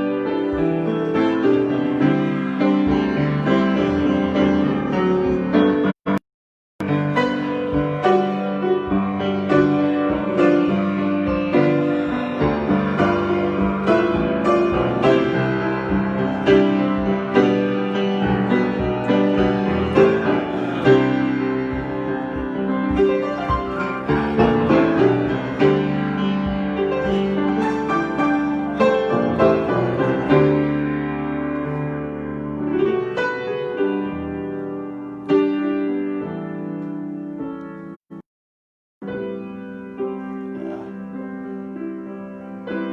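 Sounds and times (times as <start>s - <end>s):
solo piano improvisation: 0.0s - 6.0s, 6.8s - 38.0s, 39.0s - 42.9s.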